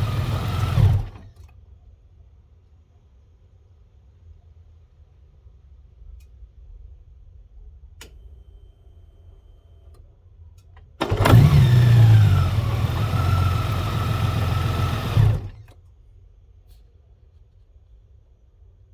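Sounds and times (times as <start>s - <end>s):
motorcycle engine starting and idling: 0.0s - 1.5s, 10.9s - 15.8s.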